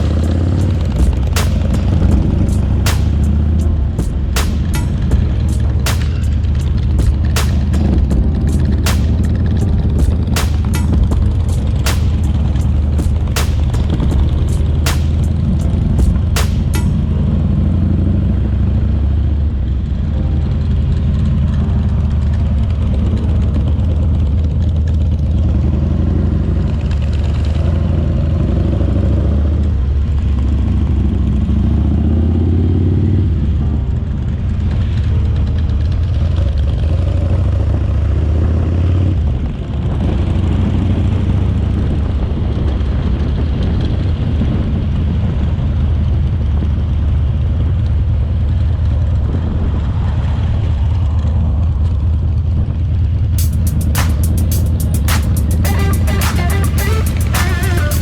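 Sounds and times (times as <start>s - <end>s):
motorcycle engine running: 0.0s - 18.3s.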